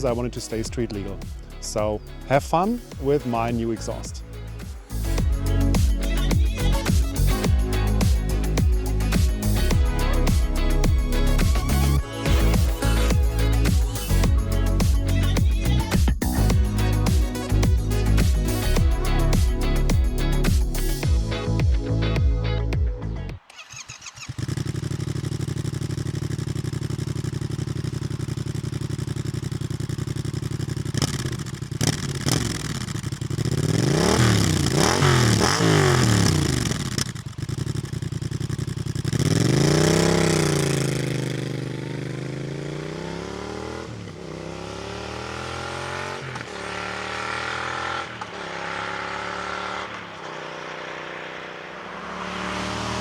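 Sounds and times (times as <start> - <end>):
motorcycle engine idling and revving: 0.0 - 53.0
motorcycle accelerating through gears: 23.4 - 53.0.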